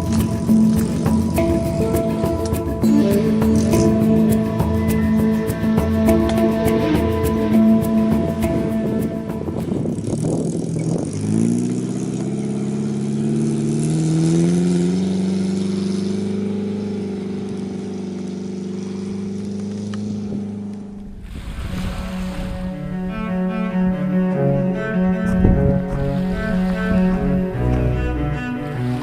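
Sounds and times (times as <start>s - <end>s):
car engine revving: 0.0s - 29.0s.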